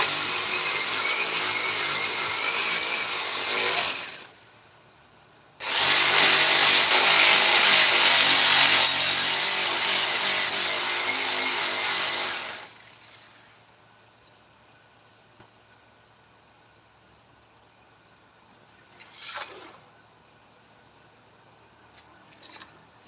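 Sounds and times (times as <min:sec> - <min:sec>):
power tool cutting wood: 0:00.0 - 0:04.3, 0:05.6 - 0:13.4.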